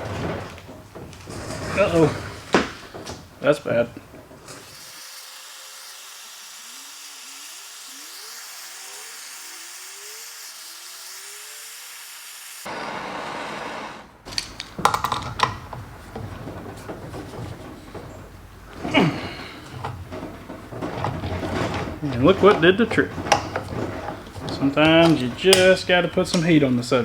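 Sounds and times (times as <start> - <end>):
heating tool hissing: 1.8 - 15.0.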